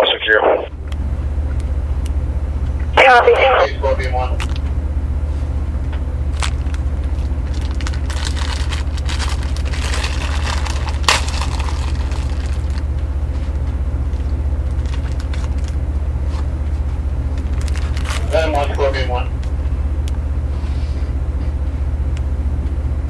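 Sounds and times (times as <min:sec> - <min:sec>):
radio clicks: 0:00.0 - 0:00.7
radio static crackling: 0:00.0 - 0:00.8, 0:02.9 - 0:04.4
low hum: 0:00.0 - 0:23.0.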